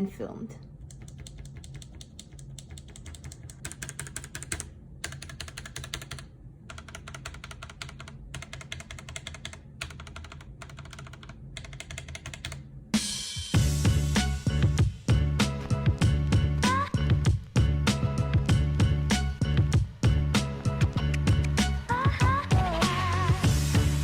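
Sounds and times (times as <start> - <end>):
mechanical keyboard typing: 0.8 - 12.6.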